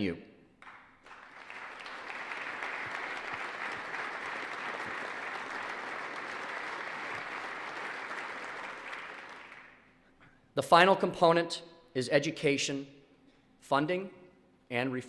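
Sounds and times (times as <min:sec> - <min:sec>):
audience applauding: 0:00.6 - 0:09.9.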